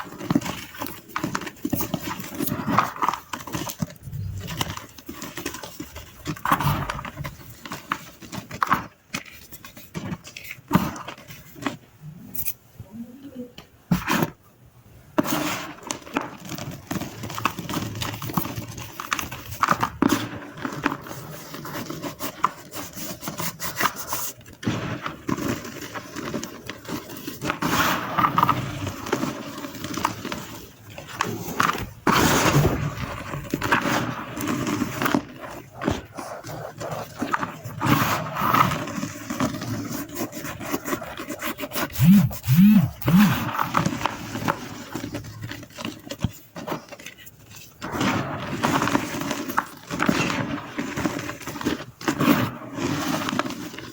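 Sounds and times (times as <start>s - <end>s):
short low-pitched sounds: 4.0s - 4.8s, 41.9s - 43.5s
chalk crunching and scraping: 33.2s - 43.6s.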